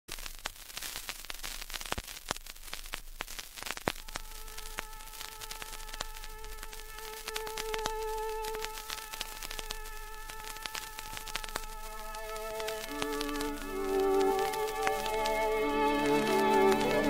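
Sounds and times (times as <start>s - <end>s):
vinyl record crackle and hiss: 0.0s - 17.0s.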